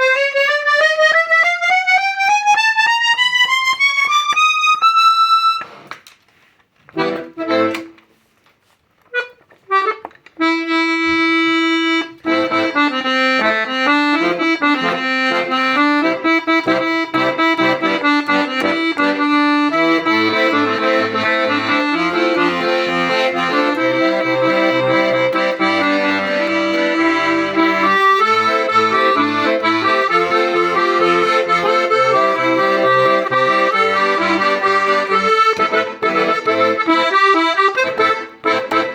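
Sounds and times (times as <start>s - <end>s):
accordion bass and chord accompaniment: 0.0s - 3.8s, 7.0s - 8.0s, 9.2s - 38.9s
accordion melody: 0.0s - 5.9s, 6.9s - 8.2s, 9.1s - 38.9s.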